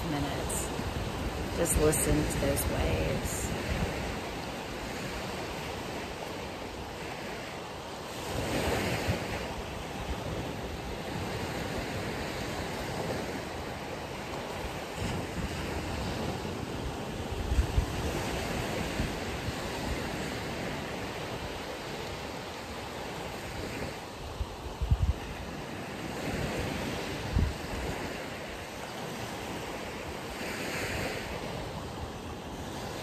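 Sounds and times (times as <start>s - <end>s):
ocean surf washing ashore: 0.0s - 33.0s
wind buffeting microphone: 8.1s - 21.8s, 23.2s - 28.3s.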